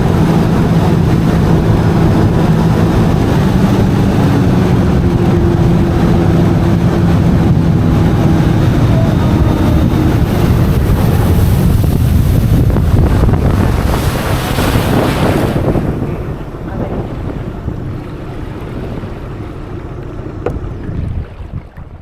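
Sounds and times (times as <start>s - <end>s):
jet ski engine hum: 0.0s - 22.0s
rushing water: 0.0s - 22.0s
wind buffeting microphone: 0.0s - 22.0s.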